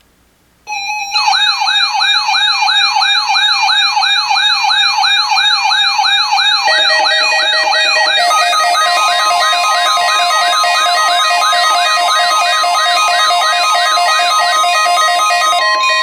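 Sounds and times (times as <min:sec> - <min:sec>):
rising whoop siren: 0:04.0 - 0:16.0
steady high alert tone: 0:04.1 - 0:16.0
stepped beeping tones: 0:04.4 - 0:16.0.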